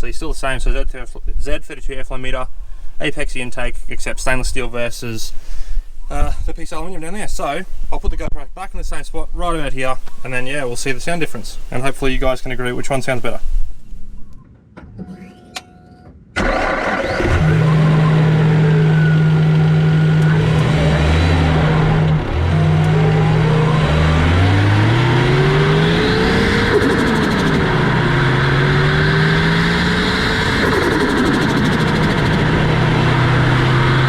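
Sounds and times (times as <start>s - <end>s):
turbocharged car engine revving: 16.4s - 34.0s.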